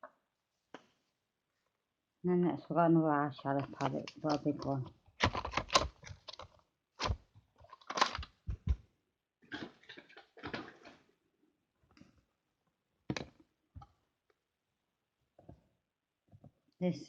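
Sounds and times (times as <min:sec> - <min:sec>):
packaging rustling and scraping: 0:03.6 - 0:08.8
plastic palette clicks and knocks: 0:03.6 - 0:08.8, 0:13.1 - 0:13.4.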